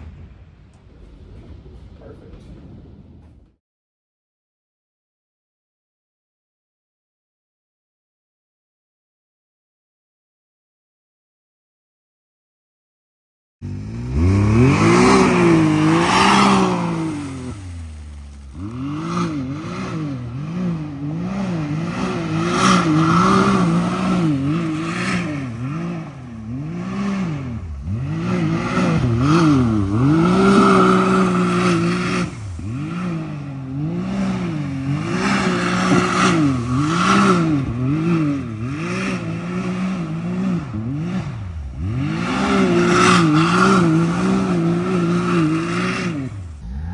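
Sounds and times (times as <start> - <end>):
engine revving: 13.6 - 46.9.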